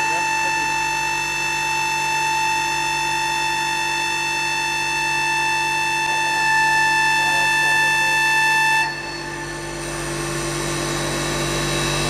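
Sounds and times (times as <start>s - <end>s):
wood lathe high-pitched whine: 0.0s - 12.0s.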